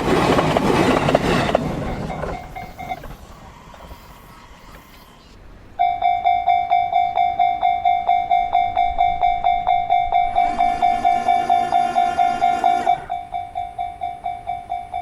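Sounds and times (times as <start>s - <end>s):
train running past: 0.0s - 15.0s
level-crossing warning bell: 1.0s - 3.3s, 5.8s - 15.0s.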